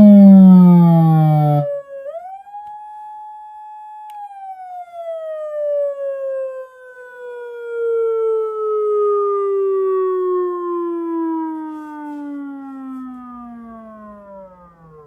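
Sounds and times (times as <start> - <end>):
electronic siren wail: 0.0 - 2.8, 3.8 - 15.0.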